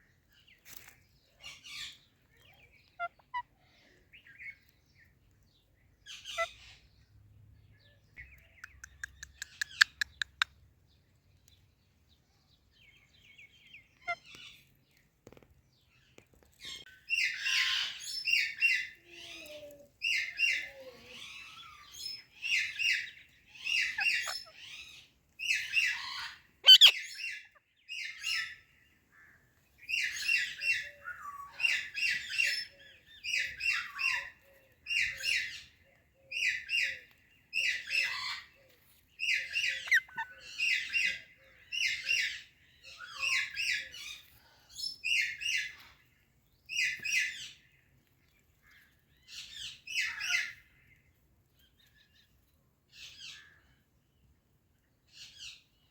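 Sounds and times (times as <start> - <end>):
parakeet calling harshly: 25.8 - 27.3.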